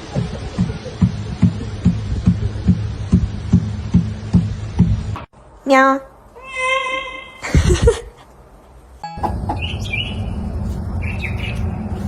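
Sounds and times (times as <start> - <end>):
low background rumble: 0.0 - 5.2, 9.2 - 12.0
bird chirping: 9.1 - 12.0.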